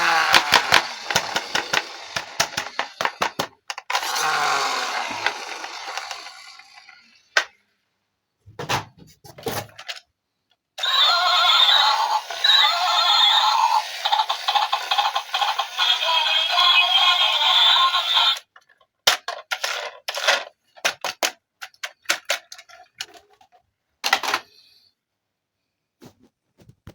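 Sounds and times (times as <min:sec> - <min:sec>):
plastic toy clicks and rattles: 0:00.0 - 0:07.5, 0:10.8 - 0:24.6
electronic toy music and voice: 0:10.8 - 0:18.4.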